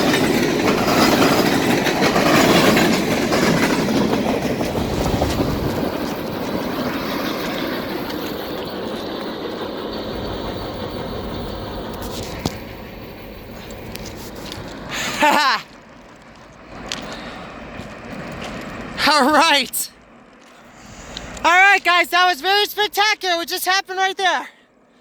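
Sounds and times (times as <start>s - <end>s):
train hiss: 0.0s - 15.5s, 20.6s - 21.5s
train wheels clattering over rails: 0.0s - 19.0s.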